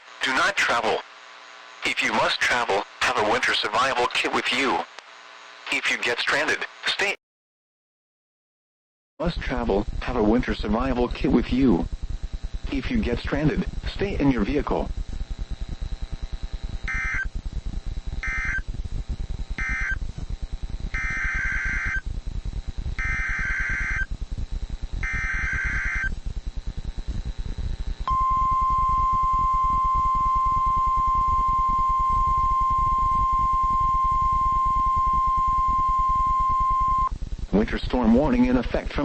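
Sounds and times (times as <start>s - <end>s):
buzzy data bursts: 9.5s - 39.0s
steady warning alarm tone: 16.8s - 17.3s, 18.2s - 18.6s, 19.6s - 20.0s, 20.9s - 22.0s, 23.0s - 24.2s, 25.0s - 26.2s, 28.1s - 37.1s.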